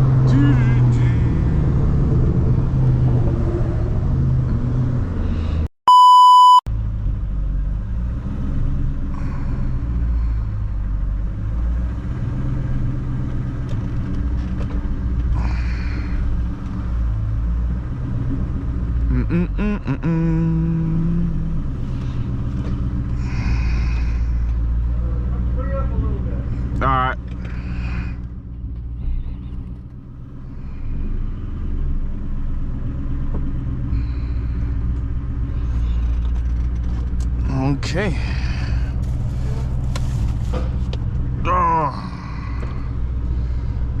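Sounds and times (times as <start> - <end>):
car engine rumbling: 0.0 - 44.0
road noise: 0.0 - 44.0
loud steady beep tone: 5.9 - 6.7.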